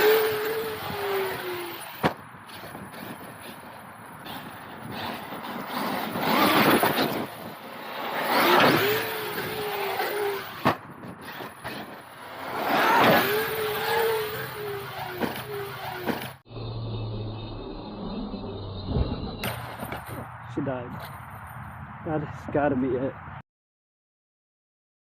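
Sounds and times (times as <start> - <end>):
rc truck electric motor whine: 0.0 - 20.0.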